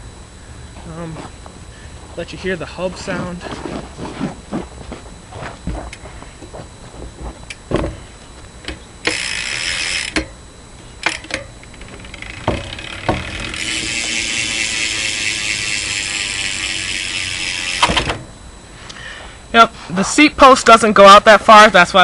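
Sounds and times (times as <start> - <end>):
bike hub ratcheting buzz: 8.6 - 18.3.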